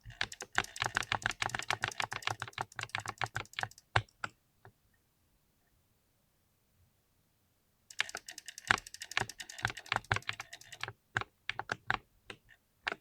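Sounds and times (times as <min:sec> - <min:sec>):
mechanical keyboard typing: 0:00.0 - 0:04.2, 0:07.9 - 0:12.0.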